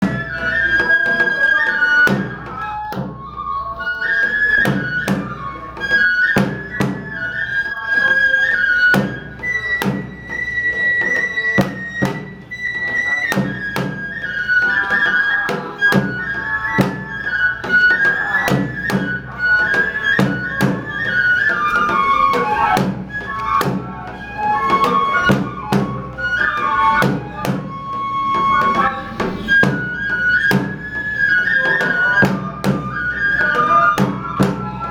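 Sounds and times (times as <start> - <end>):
bamboo flute melody: 0.0 - 34.9
drum strikes: 18.5 - 34.9.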